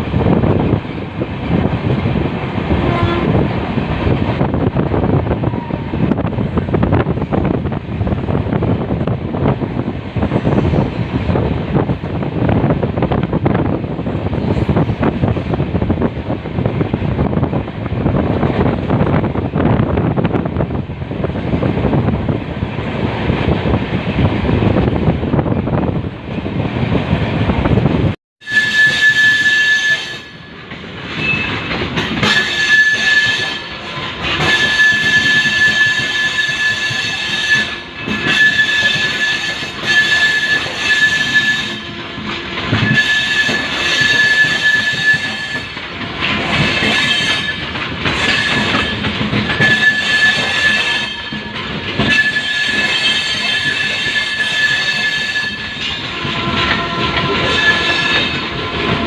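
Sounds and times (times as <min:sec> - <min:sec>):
train running gear rumble: 0:00.0 - 0:59.0
train wheels squealing: 0:28.4 - 0:42.0, 0:42.7 - 0:58.7.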